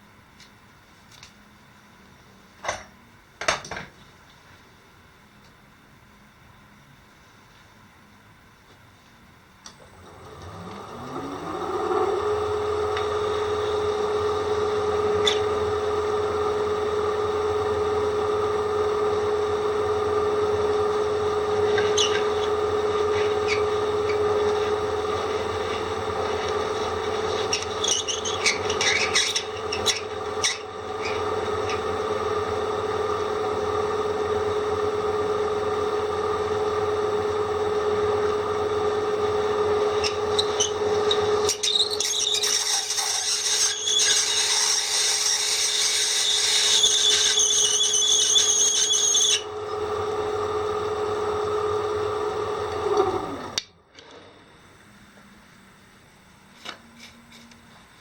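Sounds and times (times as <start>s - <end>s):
electric drill grinding: 9.9s - 16.1s, 21.1s - 32.2s, 39.8s - 50.1s
drill bit squealing: 21.6s - 31.8s, 39.9s - 49.5s.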